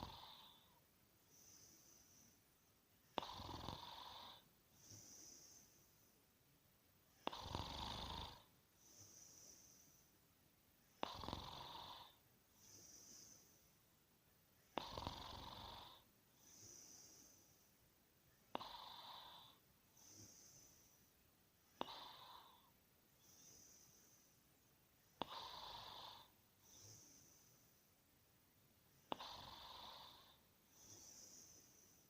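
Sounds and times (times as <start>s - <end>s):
soft hissing breath: 0.0s - 32.0s
person snoring loudly: 3.2s - 4.4s, 7.2s - 8.5s, 11.0s - 12.2s, 14.8s - 16.0s, 25.2s - 27.0s, 29.1s - 31.6s.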